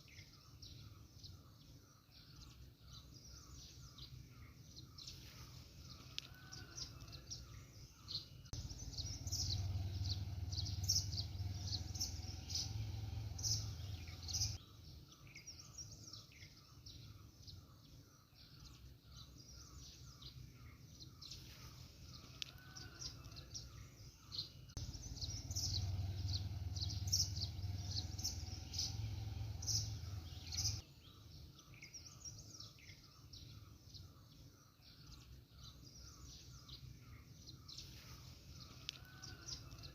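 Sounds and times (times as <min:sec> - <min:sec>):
small birds chirping: 0:00.0 - 0:39.9
low rumble: 0:08.6 - 0:14.6, 0:24.8 - 0:30.8.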